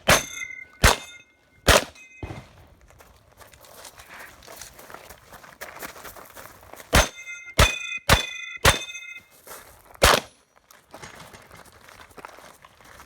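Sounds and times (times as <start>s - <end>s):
steel target ringing: 0.0s - 2.5s, 7.0s - 9.4s
shotgun shots: 0.0s - 2.6s, 6.9s - 9.0s, 10.0s - 10.4s.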